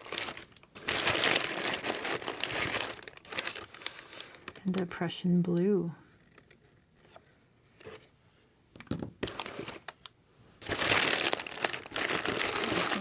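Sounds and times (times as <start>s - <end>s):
packaging crinkling: 0.0s - 4.9s, 9.2s - 13.0s.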